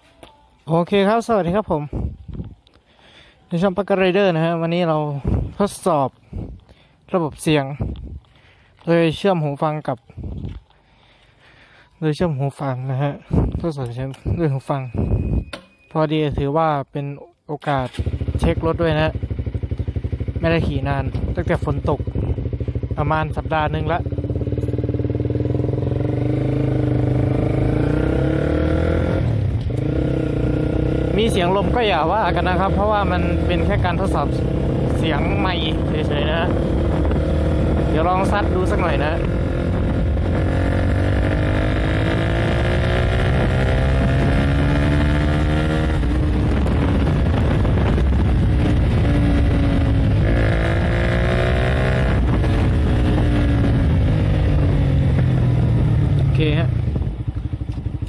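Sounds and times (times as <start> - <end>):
wind on microphone: 1.8 - 2.6, 5.2 - 5.7, 7.8 - 8.3, 10.1 - 10.6, 13.2 - 15.5, 33.7 - 58.0
motorcycle engine accelerating: 17.8 - 58.0.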